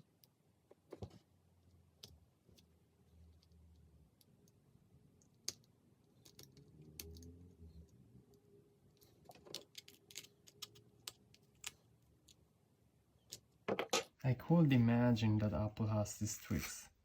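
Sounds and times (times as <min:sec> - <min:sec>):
small plastic parts clicking: 0:03.3 - 0:12.5, 0:13.2 - 0:14.2.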